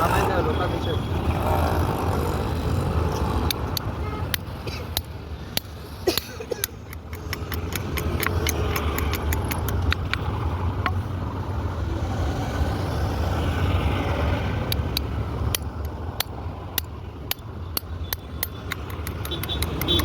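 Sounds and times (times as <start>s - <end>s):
sharp clicks: 3.1s - 11.0s, 14.7s - 20.0s.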